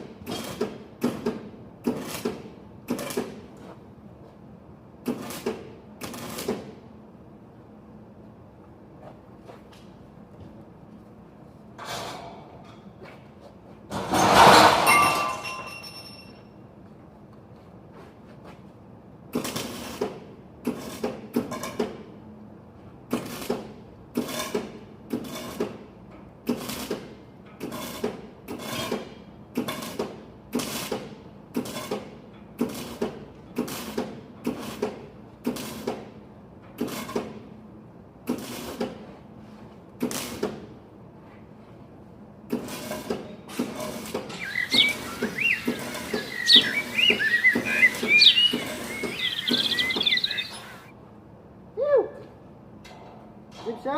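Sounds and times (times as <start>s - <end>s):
birds chirping: 44.3s - 50.9s.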